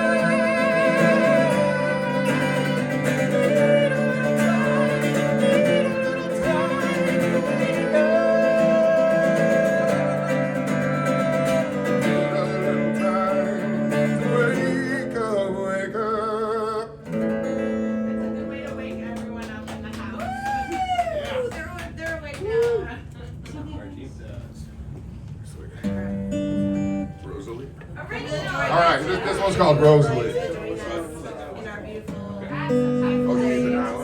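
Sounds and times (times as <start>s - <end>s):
acoustic guitar with vibrato melody: 0.0s - 22.3s, 25.8s - 31.1s, 31.7s - 34.0s.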